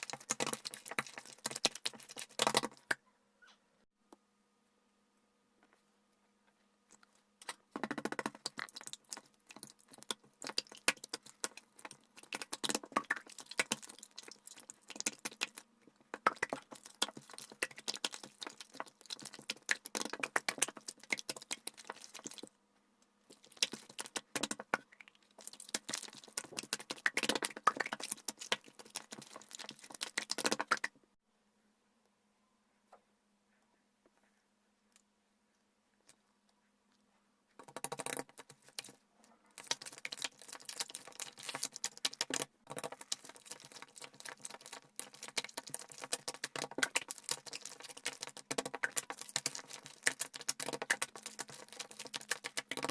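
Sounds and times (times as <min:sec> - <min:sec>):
slime squished by hand: 0:07.4 - 0:22.5, 0:23.3 - 0:31.0, 0:39.5 - 0:52.9.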